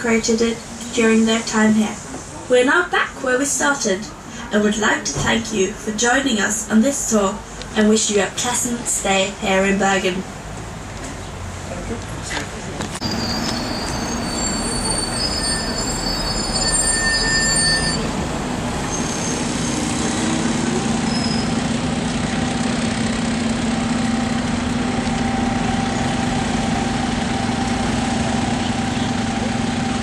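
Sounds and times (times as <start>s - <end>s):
road train engine hum: 0.0s - 30.0s
high squealing tones: 13.0s - 18.2s, 21.0s - 21.6s.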